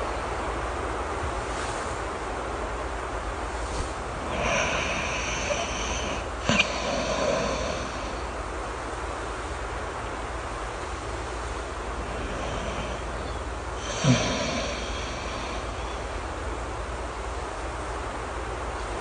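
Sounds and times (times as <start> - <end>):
steady rain: 0.0 - 19.0
person snoring: 4.2 - 8.4, 11.9 - 16.1.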